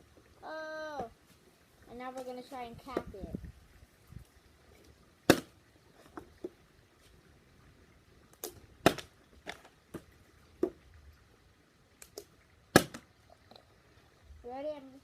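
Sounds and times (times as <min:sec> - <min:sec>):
plastic bottle landing on surface: 0:08.8 - 0:09.6, 0:12.8 - 0:13.0.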